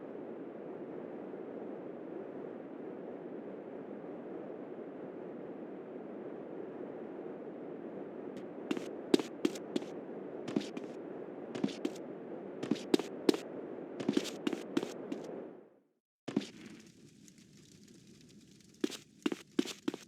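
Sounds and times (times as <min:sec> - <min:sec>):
steady background noise: 0:00.0 - 0:15.7.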